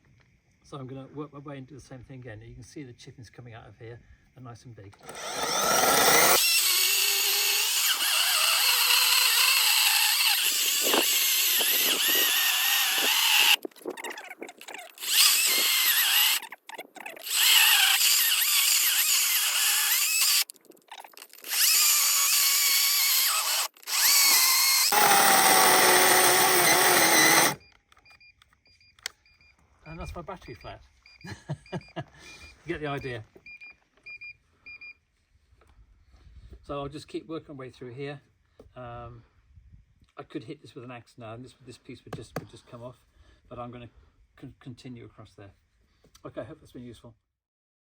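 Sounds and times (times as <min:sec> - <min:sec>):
electric chainsaw cutting wood: 0:05.0 - 0:20.5, 0:21.1 - 0:27.6.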